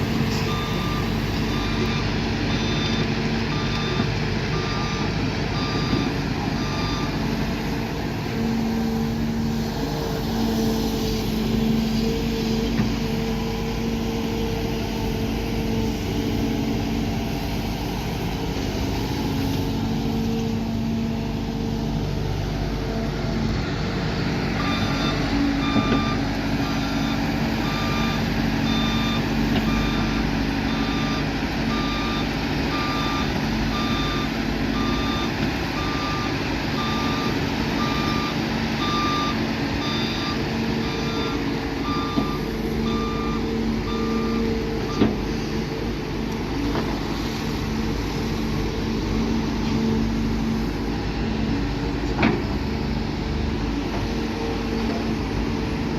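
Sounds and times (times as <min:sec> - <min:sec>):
diesel construction vehicle running: 0:00.0 - 0:55.9
reversing alarm beeping: 0:00.2 - 0:07.2, 0:24.6 - 0:45.2.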